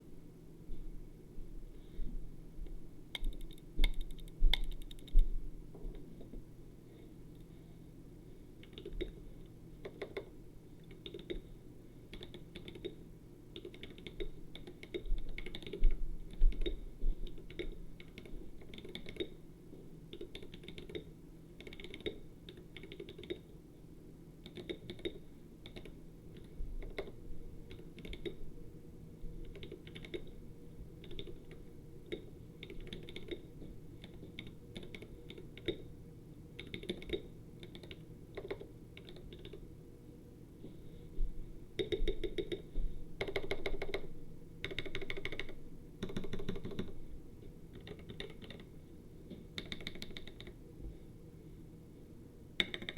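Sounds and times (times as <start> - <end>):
mechanical keyboard typing: 3.2 - 5.2, 8.6 - 9.2, 10.9 - 11.4, 12.1 - 13.0, 13.6 - 19.3, 20.1 - 23.4, 24.4 - 28.4, 29.4 - 30.3, 31.0 - 31.5, 32.1 - 35.8, 36.6 - 39.6, 41.8 - 42.6, 43.2 - 46.9, 47.8 - 48.7, 49.6 - 50.6, 52.6 - 52.9.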